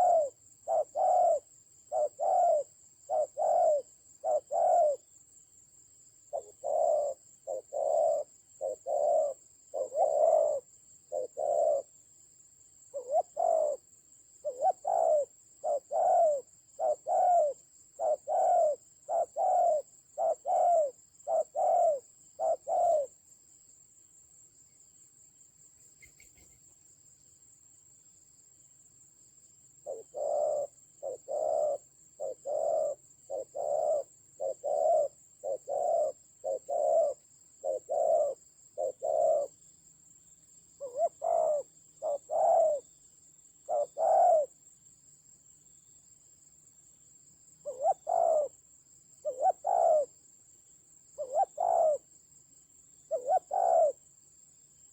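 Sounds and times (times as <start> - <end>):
dove cooing: 0.0 - 5.0, 6.3 - 11.9, 12.9 - 13.8, 14.4 - 23.1, 29.8 - 39.5, 40.8 - 42.9, 43.7 - 44.6, 47.6 - 48.5, 49.2 - 50.1, 51.2 - 52.1, 53.1 - 54.0.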